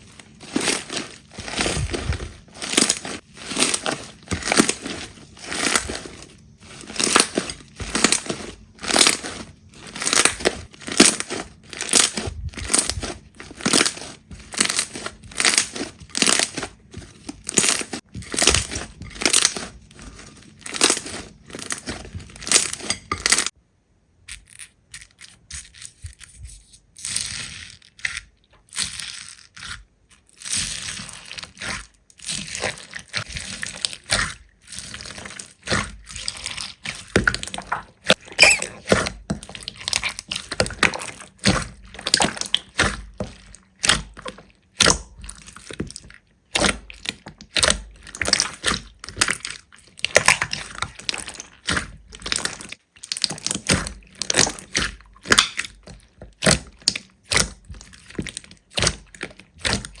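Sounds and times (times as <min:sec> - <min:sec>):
slime squelching and popping: 0:00.0 - 0:23.6, 0:24.3 - 1:00.0.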